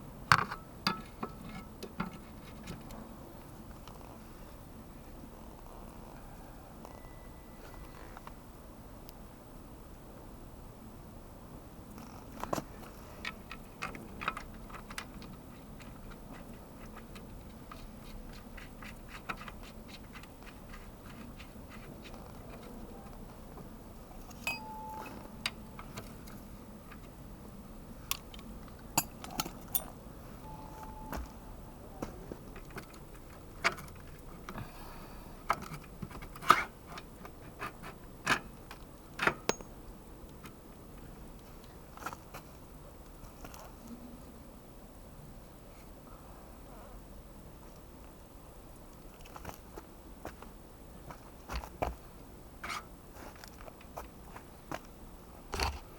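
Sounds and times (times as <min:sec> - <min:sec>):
metal hand tools clinking: 0:24.5 - 0:25.3, 0:29.0 - 0:30.0
short high tones: 0:24.5 - 0:25.4, 0:30.4 - 0:31.4.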